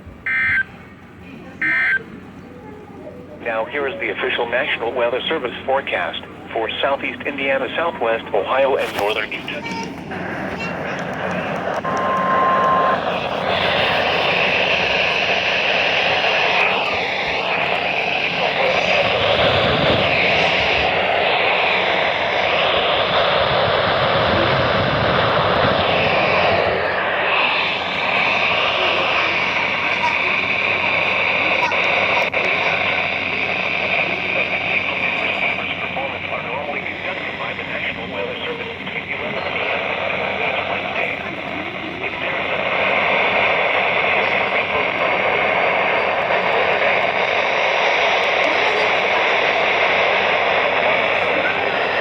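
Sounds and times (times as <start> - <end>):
radio static hiss: 3.4 - 52.0.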